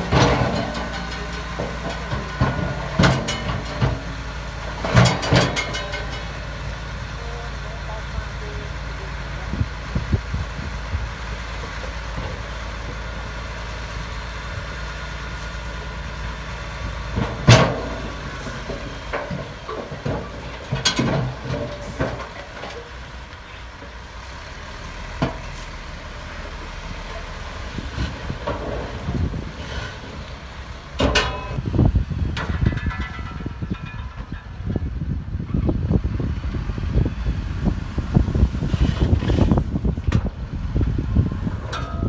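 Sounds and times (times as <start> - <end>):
sharp metal clanks and knocks: 0.0 - 6.6, 17.2 - 23.0, 31.0 - 31.7, 32.3 - 35.0, 41.6 - 42.0
heavy diesel machinery running: 0.0 - 42.0.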